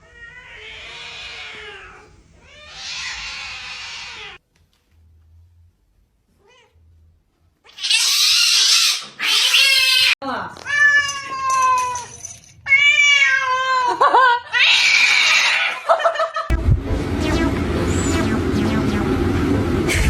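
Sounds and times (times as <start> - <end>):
cat meowing: 0.0 - 4.4, 7.7 - 12.0, 12.7 - 13.9.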